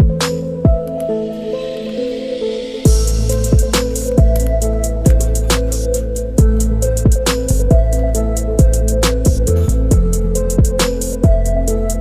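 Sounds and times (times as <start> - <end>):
electronic music with synth: 0.0 - 12.0
deep bass drum hits: 2.9 - 4.4.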